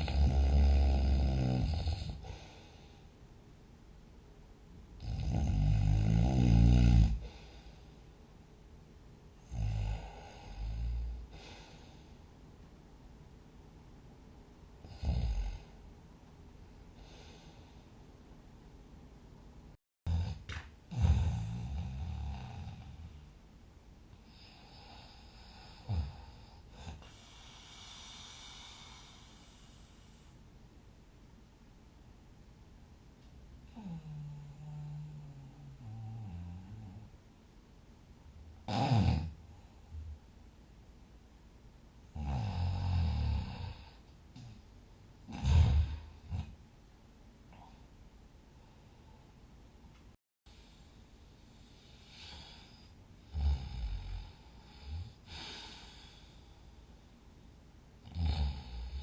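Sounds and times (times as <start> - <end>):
person snoring: 0.0 - 3.0, 5.0 - 7.8, 9.4 - 12.0, 14.8 - 15.8, 20.1 - 23.2, 24.2 - 30.1, 33.7 - 37.1, 38.6 - 40.1, 42.1 - 44.6, 45.3 - 46.5, 51.7 - 56.4, 58.0 - 59.0
quiet breathing: 0.0 - 3.6, 6.0 - 8.5, 9.3 - 12.7, 16.6 - 18.3, 24.1 - 30.6, 33.6 - 37.2, 47.4 - 59.0.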